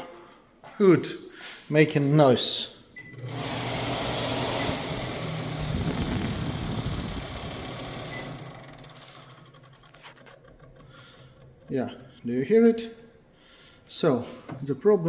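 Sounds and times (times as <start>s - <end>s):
range hood fan rushing and rubbing: 3.2s - 11.6s.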